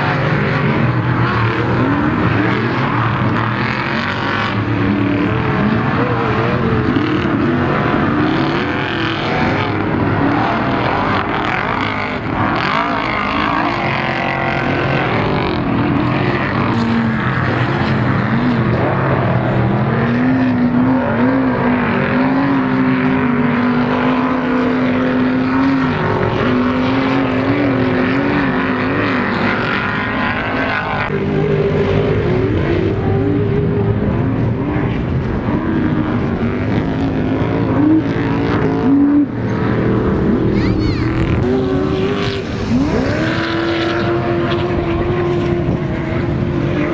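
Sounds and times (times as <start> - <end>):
race vehicle engines revving: 0.0 - 46.9.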